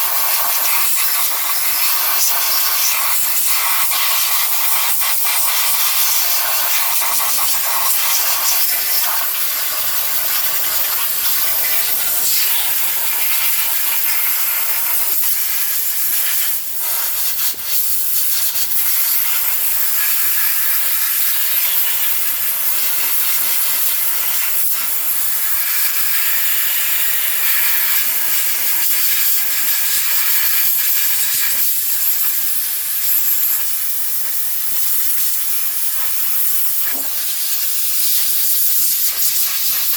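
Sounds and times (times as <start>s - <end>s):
high-pressure spray hissing: 0.0s - 39.9s.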